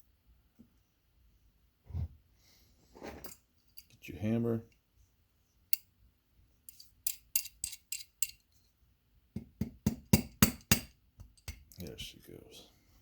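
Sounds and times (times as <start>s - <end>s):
hammer tapping on metal: 9.4s - 11.7s.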